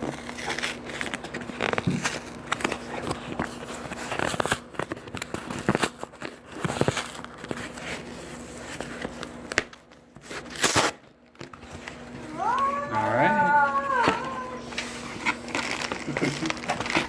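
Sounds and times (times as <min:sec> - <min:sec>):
packing material rustling and tearing: 0:00.1 - 0:08.0, 0:12.4 - 0:17.0.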